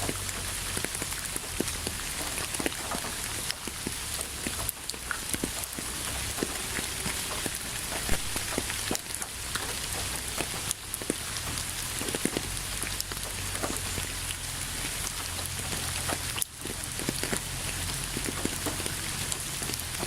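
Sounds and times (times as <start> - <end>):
raindrops ticking close by: 0.0 - 20.0
steady rain falling: 0.0 - 20.0.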